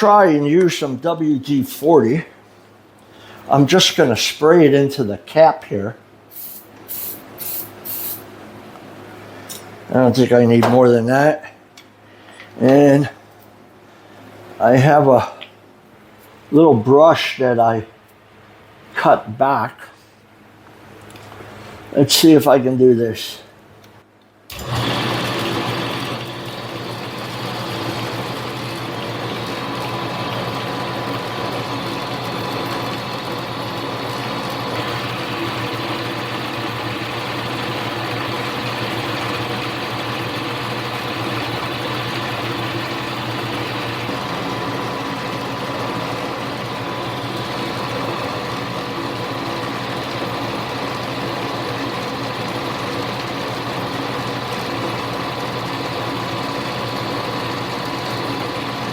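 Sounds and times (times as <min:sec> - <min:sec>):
small lathe motor and gear hum: 0:24.5 - 0:58.9.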